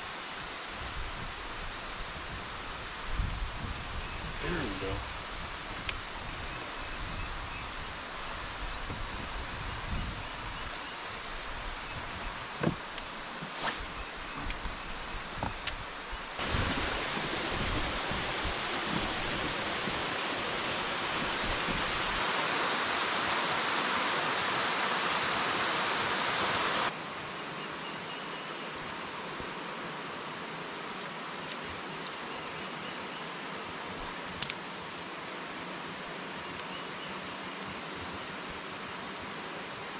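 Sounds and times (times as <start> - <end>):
steady rushing noise: 16.4 - 27.0.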